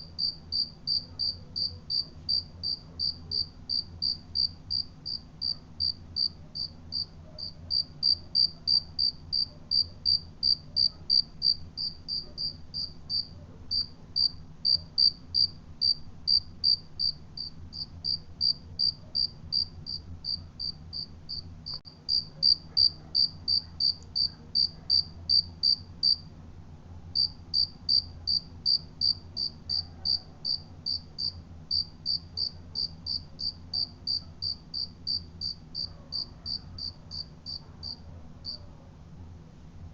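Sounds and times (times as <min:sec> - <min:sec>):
cricket chirping: 0:00.1 - 0:26.2, 0:27.2 - 0:38.6.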